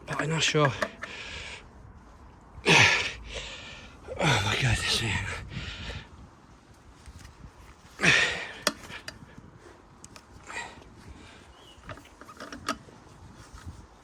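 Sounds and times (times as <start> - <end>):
man grunting and breathing hard: 2.6 - 6.1, 8.0 - 9.1.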